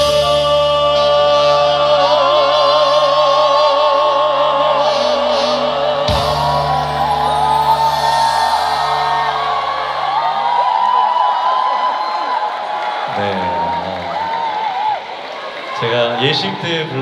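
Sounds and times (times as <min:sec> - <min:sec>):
live band playing slow ballad: 0:00.0 - 0:10.8.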